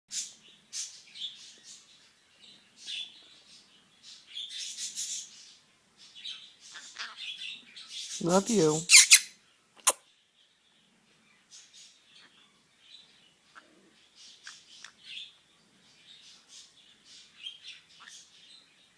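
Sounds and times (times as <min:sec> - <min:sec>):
parrot making high chirps: 0:08.3 - 0:10.0.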